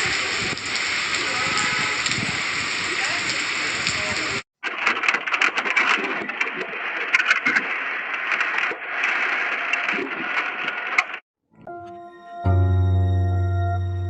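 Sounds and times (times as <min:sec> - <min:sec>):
strong storm wind blowing: 0:00.0 - 0:04.4
sharp clicks and rattles: 0:04.6 - 0:11.2.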